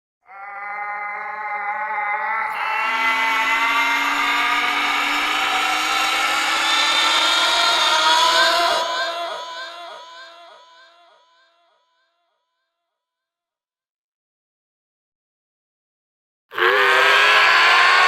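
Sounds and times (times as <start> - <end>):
man screaming: 0.5 - 11.2, 16.6 - 18.0.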